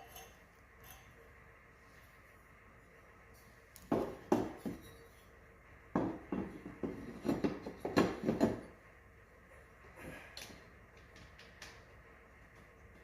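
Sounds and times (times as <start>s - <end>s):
sharp knocks and clatter: 3.8s - 5.0s, 5.9s - 8.8s.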